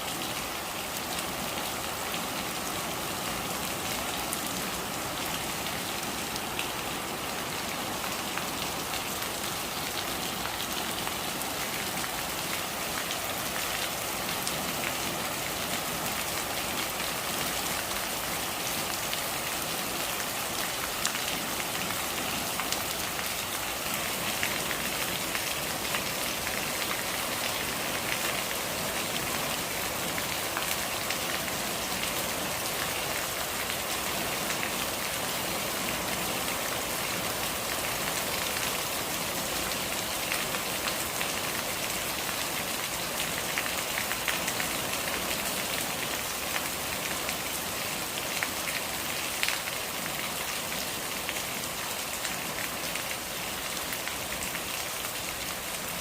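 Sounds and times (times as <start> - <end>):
rain on a hard surface: 0.0 - 56.0.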